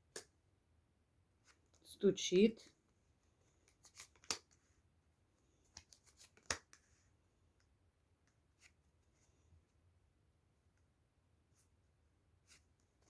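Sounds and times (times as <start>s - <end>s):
light rustling of cards: 2.6s - 4.8s, 5.4s - 7.7s
cards being shuffled: 3.6s - 4.6s, 5.7s - 6.9s
sharp card snaps: 3.9s - 4.5s, 5.8s - 6.8s.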